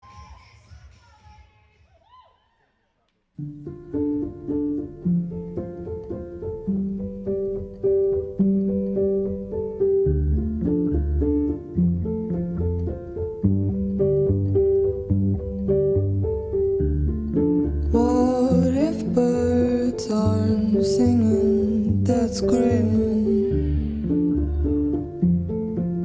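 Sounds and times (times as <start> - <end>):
instrumental music short melodic notes: 3.4 - 26.0
deep bass notes: 3.5 - 26.0.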